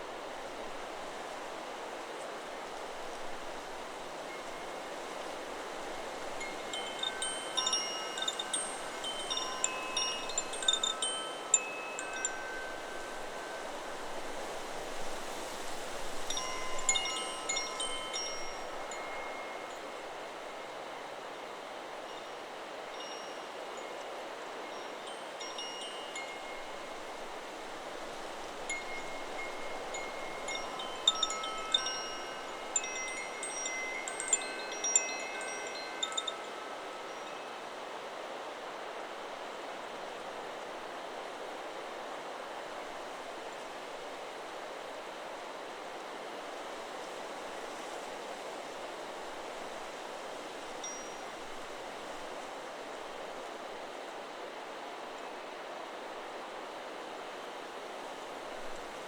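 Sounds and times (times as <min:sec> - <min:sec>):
wind chime ringing: 0:06.3 - 0:14.3, 0:16.2 - 0:20.2, 0:24.7 - 0:27.3, 0:28.6 - 0:37.6.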